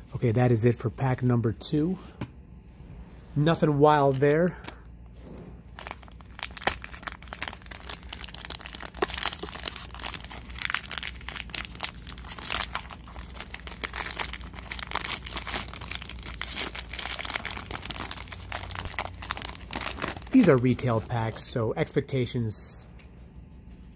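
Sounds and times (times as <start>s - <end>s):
plastic wrapper tearing and crinkling: 5.8s - 21.5s.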